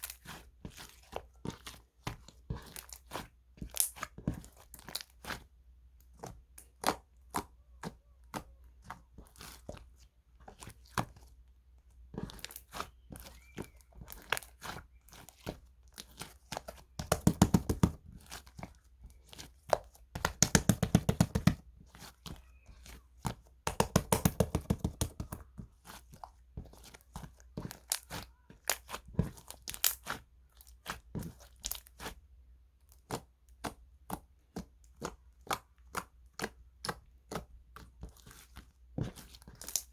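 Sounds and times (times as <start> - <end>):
slime clicking and popping: 17.0 - 18.0, 20.2 - 21.6, 23.7 - 25.5.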